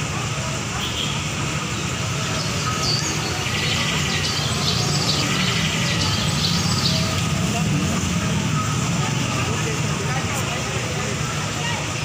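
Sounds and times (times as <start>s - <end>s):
traffic rumble: 0.0s - 12.0s
small birds chirping: 1.8s - 7.4s.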